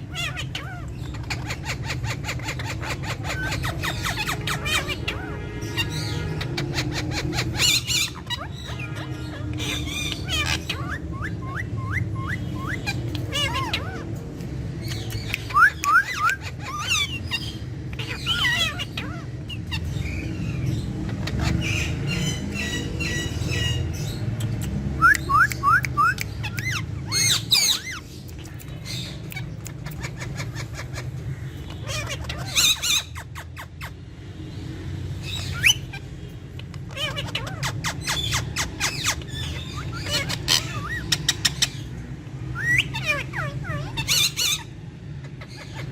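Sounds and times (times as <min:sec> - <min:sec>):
parrots calling and chattering: 0:00.0 - 0:45.9.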